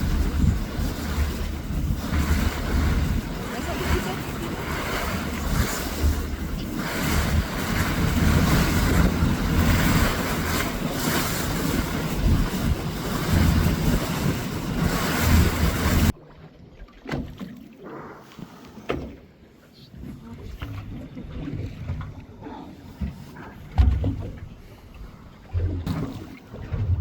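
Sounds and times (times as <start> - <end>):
wind buffeting microphone: 0.0 - 16.2, 22.9 - 27.0
water rushing: 0.0 - 17.5, 20.3 - 27.0
boat under way: 0.0 - 27.0.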